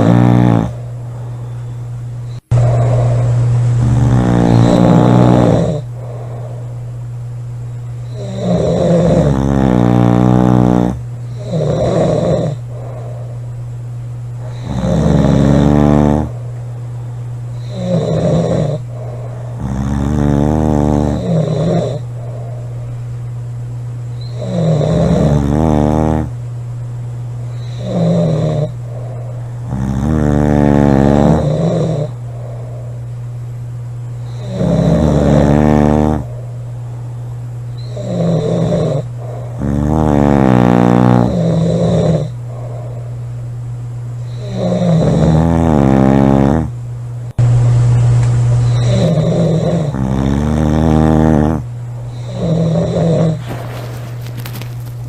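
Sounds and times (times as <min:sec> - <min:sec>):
girls snoring loudly: 0:00.0 - 0:00.8, 0:03.8 - 0:06.7, 0:08.1 - 0:13.4, 0:14.4 - 0:16.4, 0:17.6 - 0:22.3, 0:24.3 - 0:26.3, 0:27.6 - 0:33.0, 0:34.3 - 0:36.4, 0:37.8 - 0:43.1, 0:44.3 - 0:46.7, 0:48.7 - 0:51.6, 0:52.2 - 0:54.9
steady low hum: 0:00.0 - 0:55.0.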